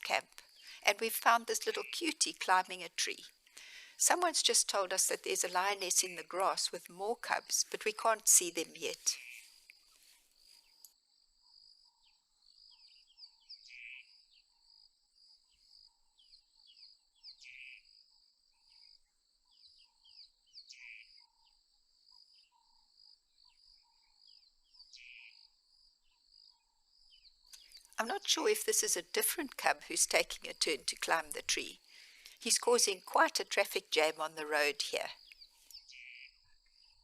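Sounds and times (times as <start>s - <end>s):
birds chirping: 0.0s - 9.6s.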